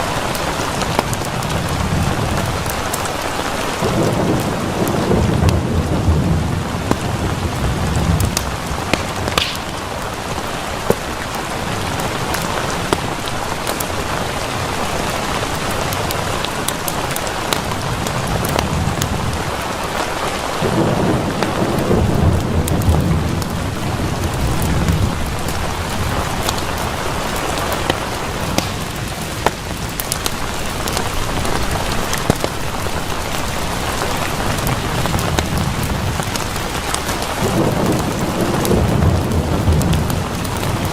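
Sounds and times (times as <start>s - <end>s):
rolling thunder: 0.0s - 10.8s, 20.5s - 40.9s
steady rain: 0.0s - 40.9s.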